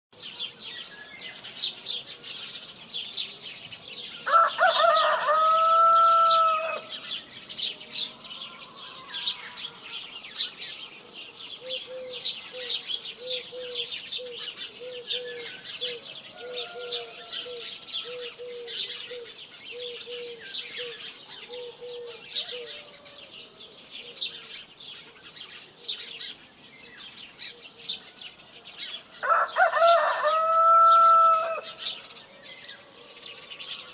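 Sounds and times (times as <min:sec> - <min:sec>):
small birds chirping: 0:00.2 - 0:33.9
rooster crowing: 0:04.2 - 0:06.9, 0:16.3 - 0:18.3, 0:22.1 - 0:23.4, 0:29.2 - 0:31.8.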